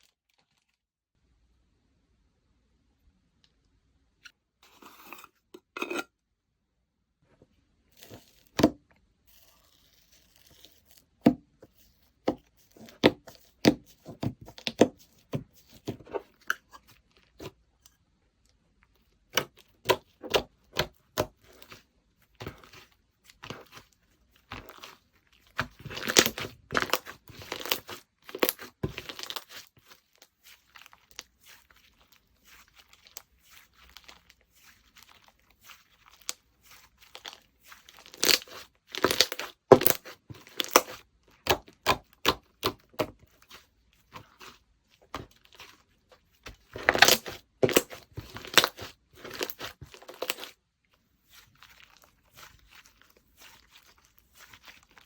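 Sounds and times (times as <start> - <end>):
slime popping and crackling: 23.4 - 43.6, 46.4 - 50.6.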